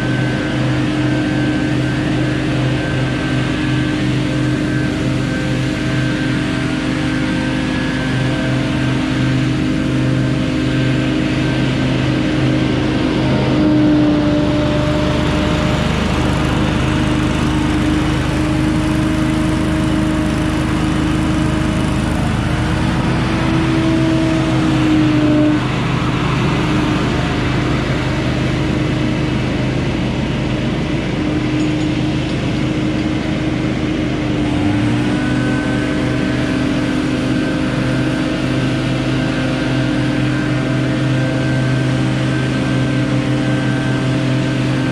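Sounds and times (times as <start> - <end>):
leaf blower engine running: 0.0 - 44.9.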